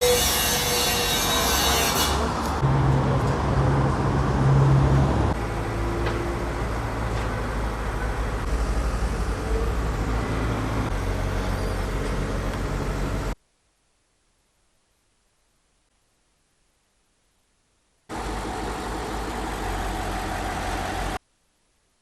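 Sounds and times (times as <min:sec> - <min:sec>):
rumble of passing vehicles: 0:01.1 - 0:13.4, 0:18.1 - 0:21.2.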